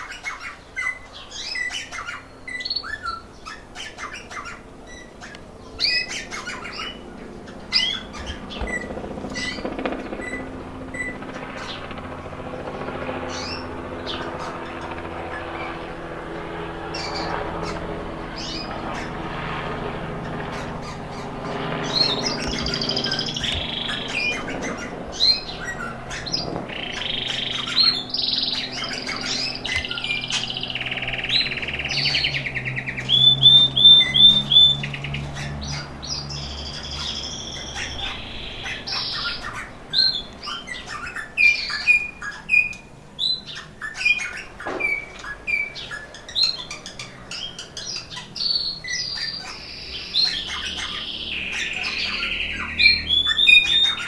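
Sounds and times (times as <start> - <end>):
rolling bird trill: 0.0 - 42.8
canaries singing and chirping: 0.0 - 54.0.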